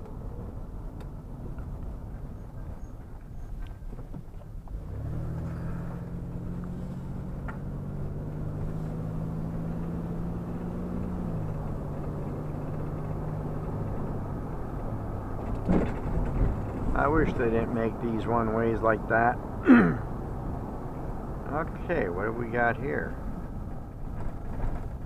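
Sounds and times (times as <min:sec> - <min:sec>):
road rumble inside car: 0:00.0 - 0:25.0
vehicle engine: 0:00.0 - 0:25.0.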